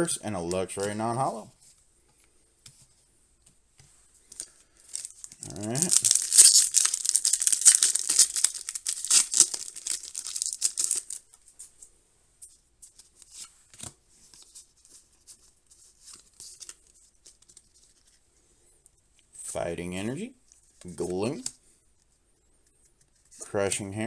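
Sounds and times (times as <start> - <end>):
foil wrapper crinkling and tearing: 4.4 - 11.4.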